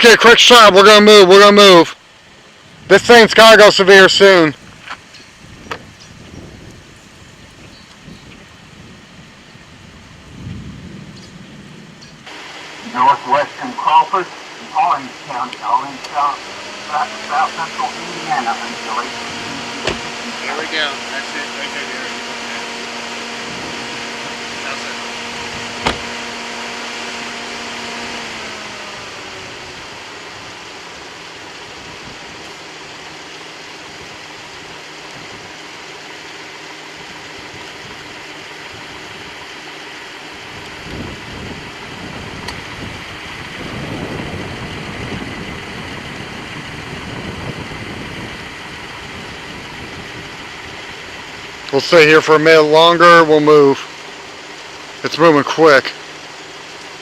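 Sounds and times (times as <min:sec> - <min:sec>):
steady rushing hiss: 0:00.0 - 0:57.0
vehicle engine idling: 0:00.0 - 0:57.0
rough low rumble: 0:04.5 - 0:33.0, 0:40.5 - 0:52.3
hum dipping in pitch: 0:10.0 - 0:57.0.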